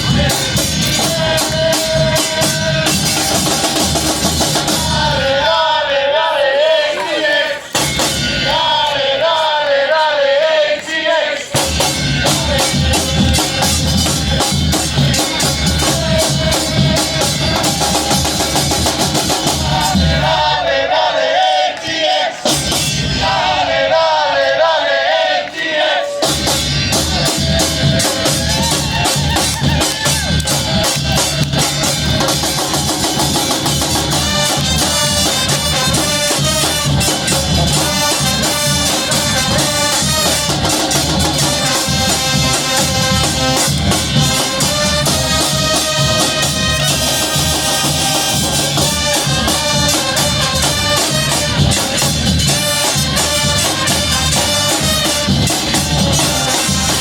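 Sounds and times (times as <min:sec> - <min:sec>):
heavy drumming: 0:00.0 - 0:05.8, 0:07.6 - 0:09.3, 0:11.5 - 0:57.0.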